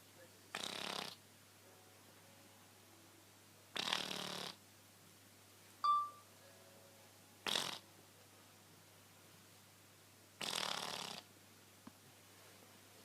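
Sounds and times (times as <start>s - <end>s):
cat snoring: 0.5s - 1.2s, 3.7s - 4.6s, 7.4s - 7.8s, 10.4s - 11.3s.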